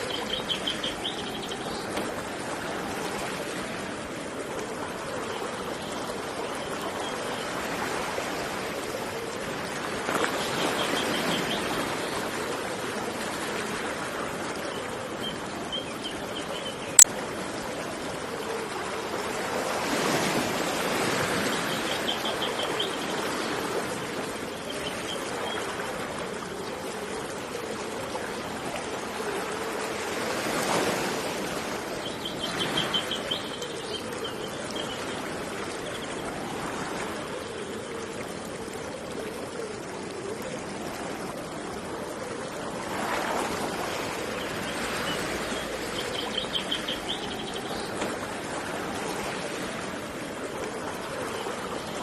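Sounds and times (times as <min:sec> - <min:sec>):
birds chirping in trills: 0:00.0 - 0:01.9, 0:21.5 - 0:23.4, 0:44.3 - 0:48.0
running water rushing: 0:00.0 - 0:52.0.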